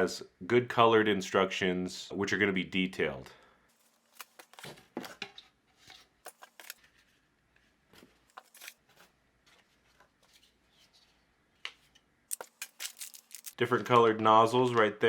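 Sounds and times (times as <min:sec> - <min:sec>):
packaging rustling and clicking: 0:03.8 - 0:05.2, 0:06.2 - 0:07.0, 0:12.3 - 0:13.6.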